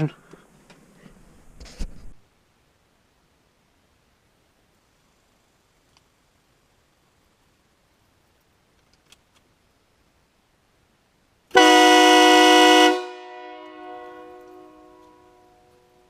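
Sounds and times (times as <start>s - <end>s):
faint clicks: 5.8s - 6.1s
horn echo: 11.6s - 16.0s
three-chime train horn blast: 11.6s - 16.0s.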